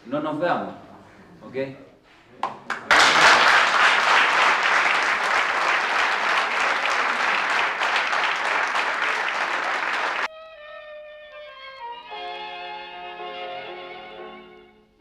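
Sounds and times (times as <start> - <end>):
audience applauding: 2.4 - 10.3.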